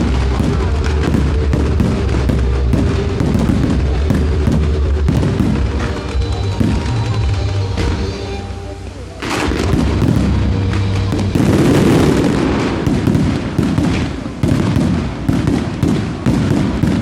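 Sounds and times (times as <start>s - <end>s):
fireworks crackling and banging: 0.0s - 17.0s.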